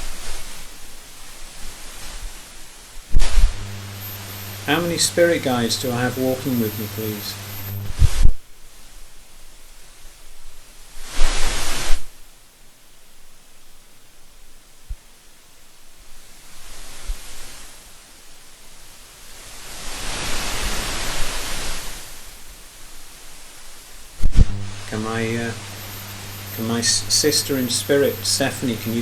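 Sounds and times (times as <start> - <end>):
steady hiss: 0.0 - 29.0
rushes of noise: 3.2 - 8.3, 19.3 - 22.5, 24.2 - 29.0.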